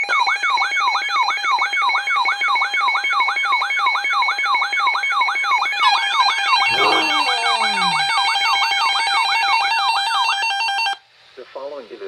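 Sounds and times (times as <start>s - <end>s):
electronic siren sweeping down: 5.9s - 8.1s.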